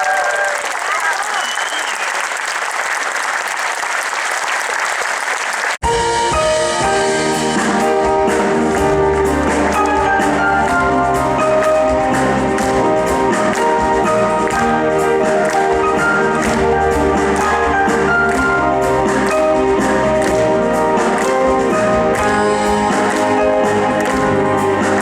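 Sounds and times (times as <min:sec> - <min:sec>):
audience applauding: 0:00.0 - 0:05.8, 0:07.0 - 0:25.0
instrumental music with bass line: 0:05.8 - 0:25.0.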